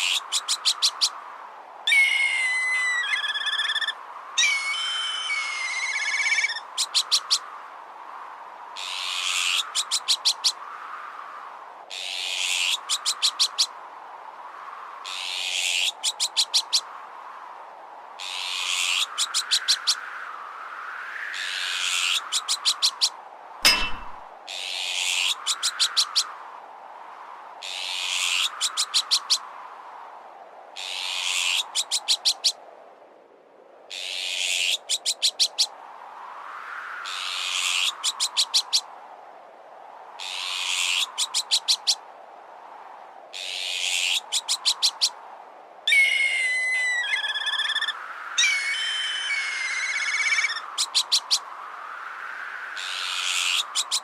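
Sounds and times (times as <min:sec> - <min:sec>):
strong wind: 0:00.0 - 0:54.0
kite whistled call: 0:01.9 - 0:06.6, 0:45.9 - 0:51.0
magpie alarm calls: 0:01.9 - 0:07.2, 0:45.9 - 0:51.3
sharp metallic strike: 0:23.6 - 0:24.3.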